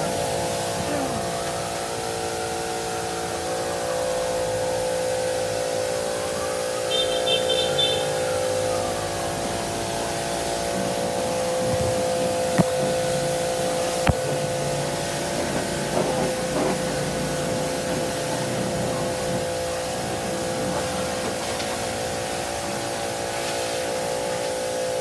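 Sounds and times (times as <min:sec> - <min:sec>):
hissing spray: 0:06.8 - 0:24.9.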